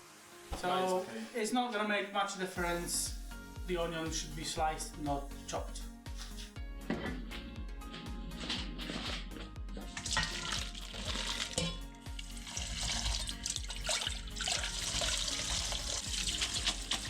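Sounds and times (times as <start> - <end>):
background music: 0.0 - 17.0
tap water running into sink: 9.8 - 17.0.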